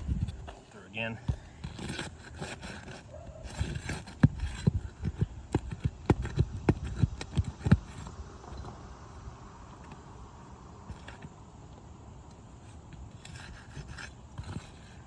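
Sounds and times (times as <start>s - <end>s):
hand tool knocking on roof shingles: 1.2s - 8.0s.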